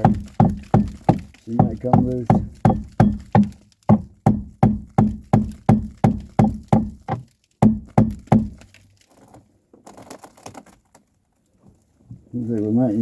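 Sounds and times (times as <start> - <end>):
hammer striking wooden beam: 0.0 - 8.8.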